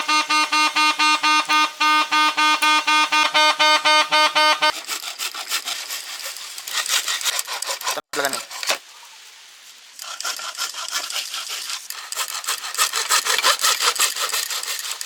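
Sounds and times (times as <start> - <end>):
vuvuzela horn blasts: 0.0 - 4.8
scratchy rubbing: 0.0 - 8.8, 10.0 - 15.0.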